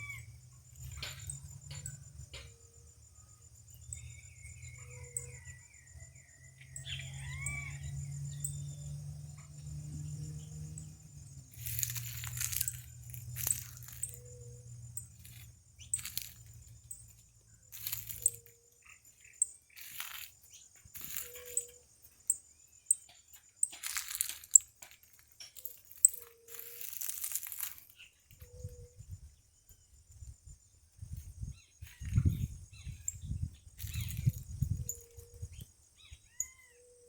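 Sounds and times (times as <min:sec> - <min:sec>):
bird rustling and crunching: 0:11.5 - 0:14.4, 0:15.0 - 0:17.1, 0:17.7 - 0:18.6, 0:19.7 - 0:21.7, 0:23.6 - 0:28.1, 0:33.8 - 0:34.5.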